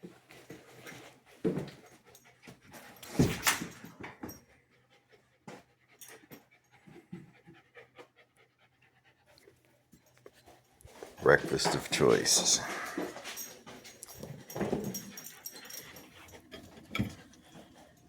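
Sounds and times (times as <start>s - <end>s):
dogs panting: 0.3s - 18.0s.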